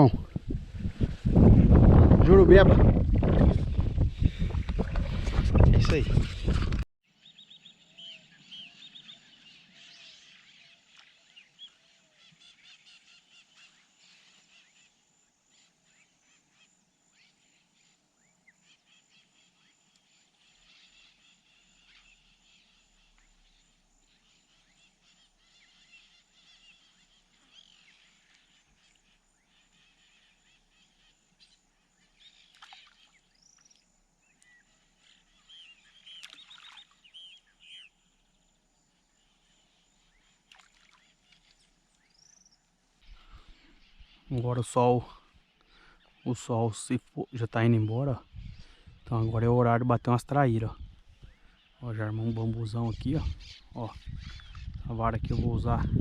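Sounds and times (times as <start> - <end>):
birds chirping and whistling: 34.3 - 38.0, 47.2 - 56.0.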